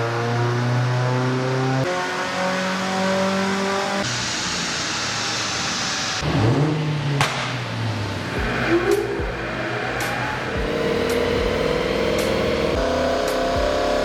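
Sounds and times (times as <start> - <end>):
car engines running: 0.0 - 14.0
engine revving: 0.0 - 14.0.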